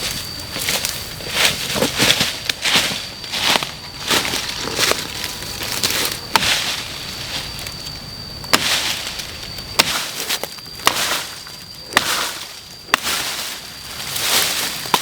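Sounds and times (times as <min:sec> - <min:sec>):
hand tool chopping wood: 0:05.7 - 0:06.8, 0:08.5 - 0:09.2, 0:09.8 - 0:13.6, 0:14.8 - 0:15.0.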